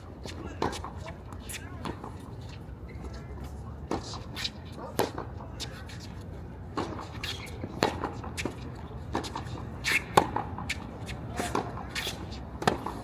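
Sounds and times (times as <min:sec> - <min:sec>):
shoes shuffling on court: 0:00.0 - 0:13.0
tennis balls struck by racquets: 0:03.9 - 0:13.0
tennis balls bouncing on hard court: 0:04.9 - 0:05.3, 0:06.7 - 0:13.0.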